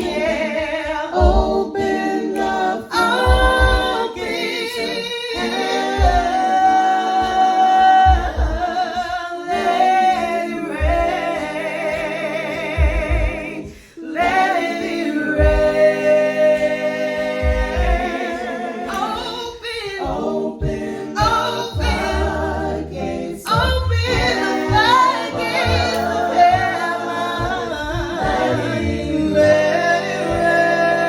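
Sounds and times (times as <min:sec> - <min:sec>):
gospel choir singing harmonies: 0:00.0 - 0:31.0
woman singing lead: 0:00.0 - 0:31.0
low pulses: 0:20.6 - 0:29.3.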